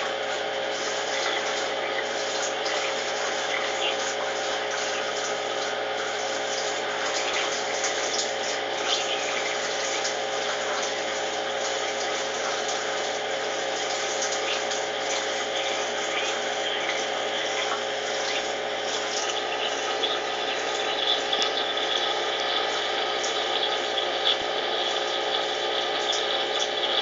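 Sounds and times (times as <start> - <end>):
drain pump humming: 0.0 - 27.0
washing machine spinning: 0.0 - 27.0
water rushing through hose: 0.0 - 27.0.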